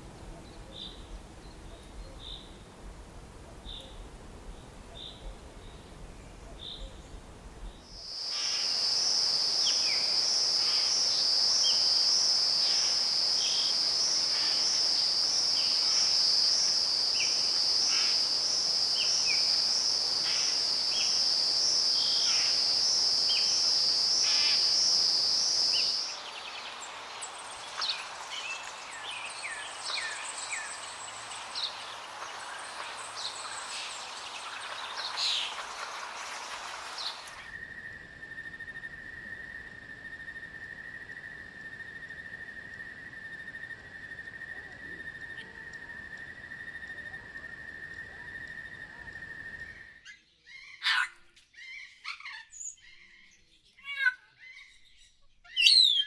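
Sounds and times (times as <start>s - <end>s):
high-pitched insect trill: 7.9s - 45.6s
birds chirping: 12.7s - 37.6s
bird whistles: 55.5s - 56.0s.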